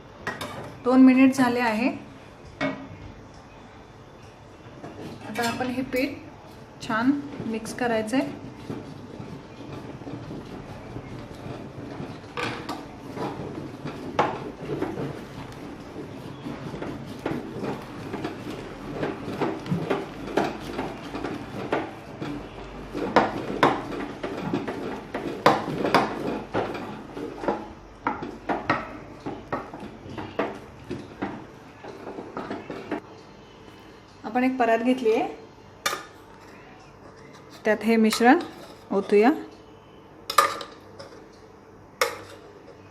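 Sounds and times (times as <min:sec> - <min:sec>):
utensil scraping and knocking pot: 0:06.8 - 0:33.0, 0:35.8 - 0:39.6, 0:40.3 - 0:41.4, 0:42.0 - 0:42.9.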